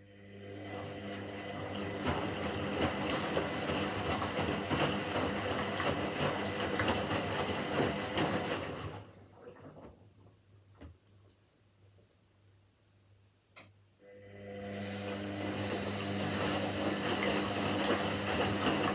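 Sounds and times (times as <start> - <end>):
washing machine drum turning: 15.1 - 18.9.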